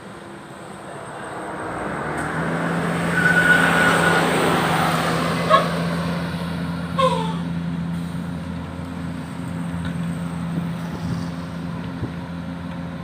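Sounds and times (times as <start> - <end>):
diesel truck engine running: 0.0 - 13.0
road noise rush: 0.0 - 13.0
high whistle: 3.1 - 4.2.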